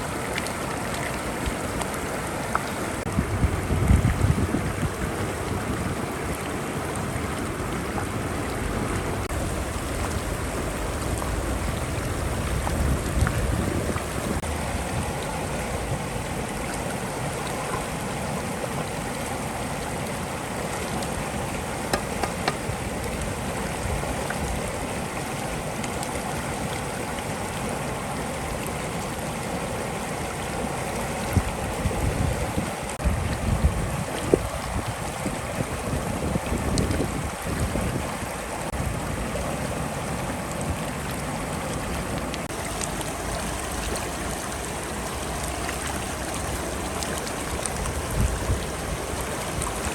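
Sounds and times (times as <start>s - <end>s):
stream water rushing and trickling: 0.0s - 49.9s.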